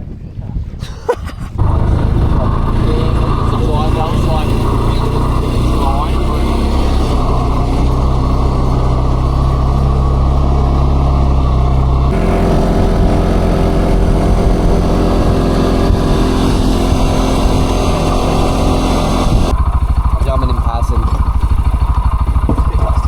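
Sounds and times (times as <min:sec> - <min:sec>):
vehicle engine running: 0:01.6 - 0:23.0.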